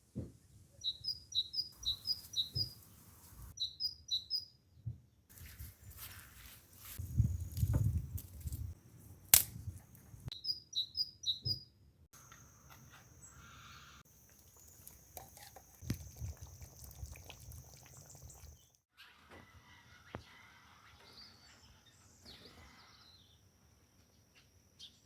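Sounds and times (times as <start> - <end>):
small bird chirping: 0.8 - 4.6, 10.2 - 11.7, 12.6 - 18.8.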